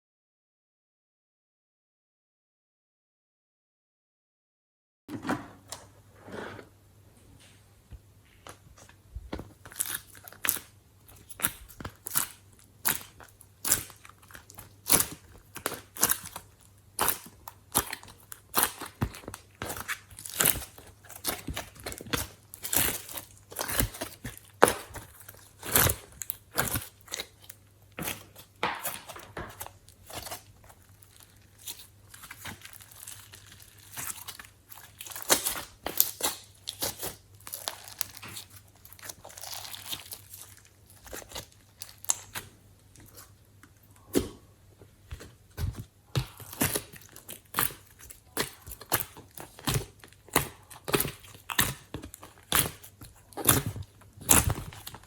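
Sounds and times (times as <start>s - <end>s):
slime squished by hand: 9.5s - 43.4s, 44.0s - 55.0s.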